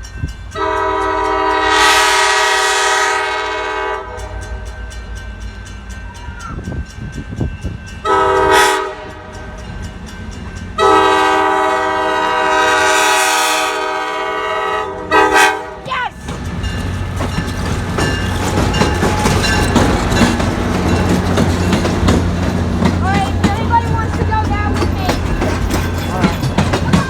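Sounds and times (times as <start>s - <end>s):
train rumbling past: 0.0s - 27.0s
locomotive air horn blasts: 0.6s - 4.4s, 8.0s - 9.4s, 10.8s - 16.0s
wheels clicking over rail joints: 15.7s - 27.0s.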